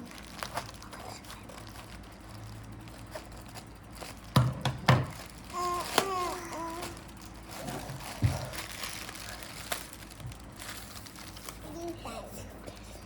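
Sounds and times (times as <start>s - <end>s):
cardboard rustling: 2.8s - 12.2s
loud thumps on cardboard: 8.2s - 8.5s.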